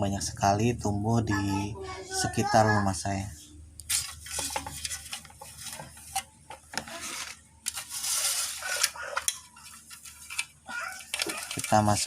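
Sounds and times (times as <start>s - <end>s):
plant stems rustling: 3.8s - 12.0s.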